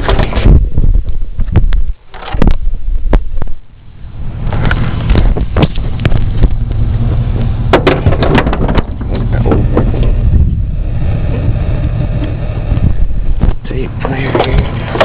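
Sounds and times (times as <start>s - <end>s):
low engine rumble: 0.0s - 15.0s
knocks and clattering: 7.4s - 10.2s.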